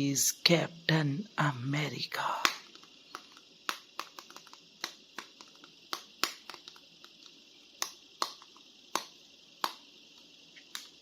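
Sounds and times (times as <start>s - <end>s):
plastic figures clicking: 2.4s - 11.0s.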